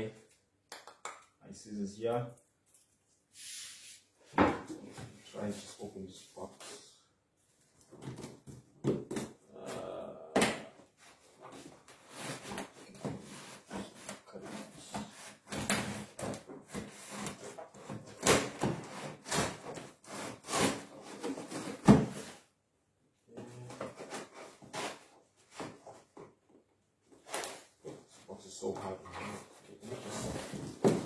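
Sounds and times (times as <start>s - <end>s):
scissors cutting cardboard box: 15.8s - 21.8s.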